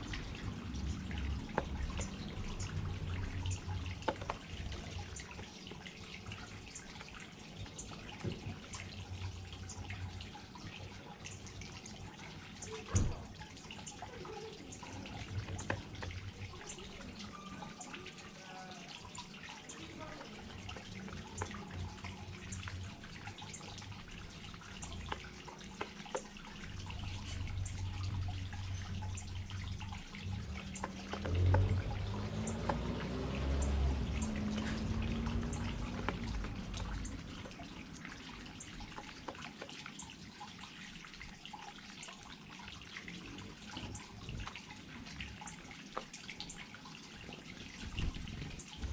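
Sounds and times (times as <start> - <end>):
waterfall trickling and splashing: 0.0 - 48.9.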